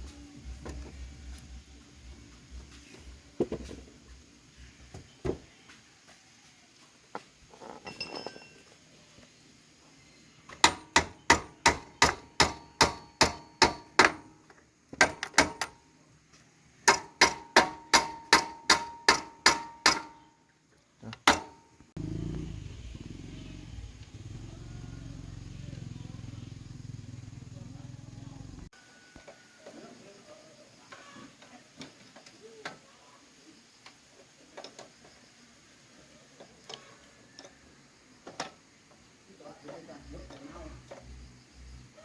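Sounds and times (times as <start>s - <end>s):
hammer striking metal: 10.6s - 14.4s, 15.0s - 15.8s, 16.8s - 20.4s, 21.2s - 21.7s.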